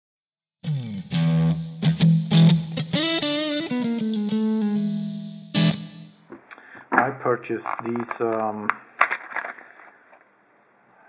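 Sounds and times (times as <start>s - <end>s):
electric guitar riff: 0.6s - 6.2s.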